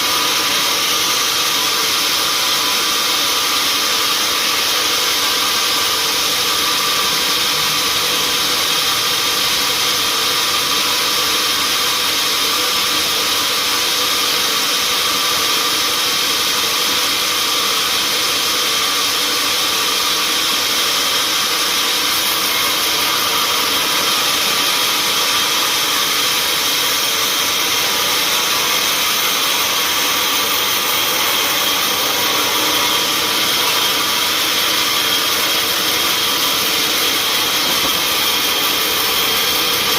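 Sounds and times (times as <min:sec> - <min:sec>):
sawmill machinery running: 0:00.0 - 0:39.9
steady whining tones: 0:22.0 - 0:39.9.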